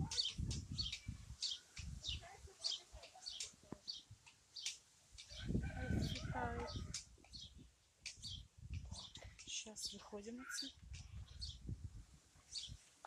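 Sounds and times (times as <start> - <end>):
wind gusting on microphone: 0.0 - 2.7, 5.3 - 12.8
songbirds chirping: 0.0 - 13.0.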